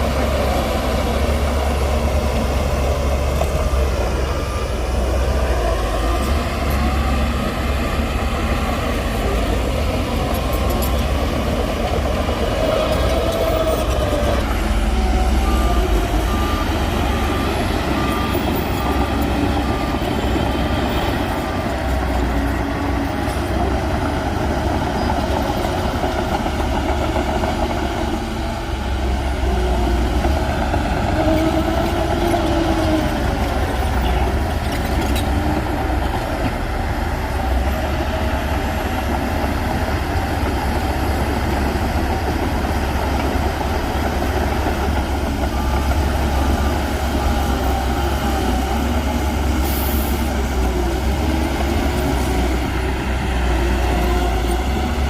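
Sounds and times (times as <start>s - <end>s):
diesel machinery engine rumble: 0.0s - 55.0s
reversing alarm beeping: 0.2s - 23.2s.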